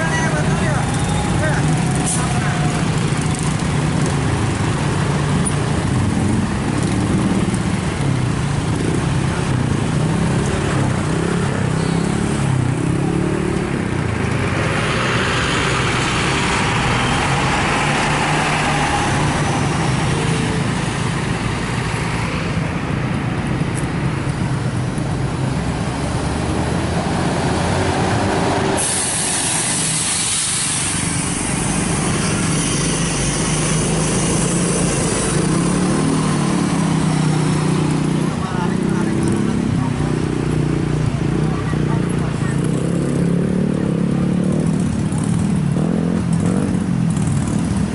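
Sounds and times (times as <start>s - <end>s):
bus engine running: 0.0s - 47.9s
loud air hiss: 28.7s - 35.2s.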